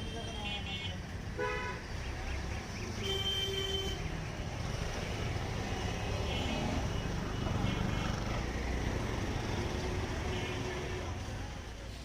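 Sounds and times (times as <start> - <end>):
vehicle horn: 0.0 - 1.8, 3.0 - 4.0
rumble of passing vehicles: 0.0 - 12.0.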